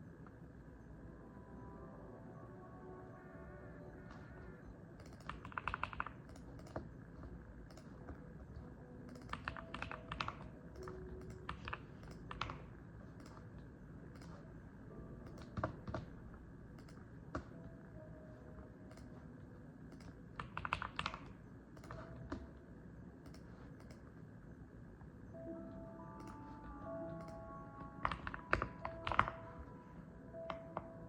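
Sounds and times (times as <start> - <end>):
typing on mechanical keyboard: 5.0 - 6.9, 9.1 - 13.5, 19.9 - 22.4, 26.2 - 26.6, 28.0 - 29.5.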